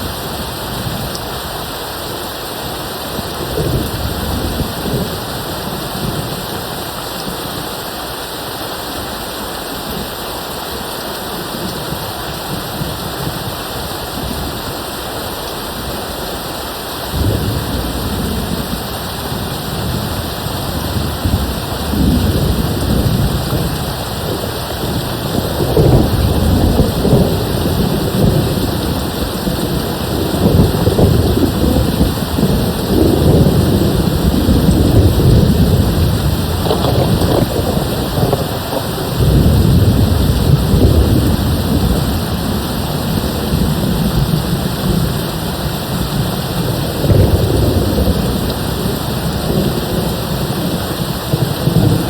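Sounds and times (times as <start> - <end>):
steady rain: 0.0 - 52.0
rolling thunder: 3.1 - 6.8, 17.1 - 52.0.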